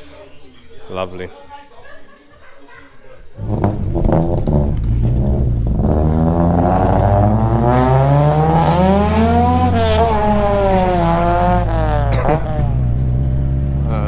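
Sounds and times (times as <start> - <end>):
engine cracks: 3.4 - 14.0
turbocharged engine revving: 3.4 - 14.0.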